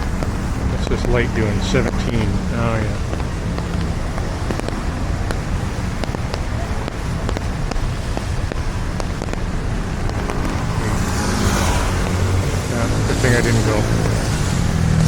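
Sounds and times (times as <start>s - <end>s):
engine rumble: 0.0s - 15.0s
tyre noise on wet road: 0.0s - 15.0s
wind on microphone: 0.0s - 15.0s.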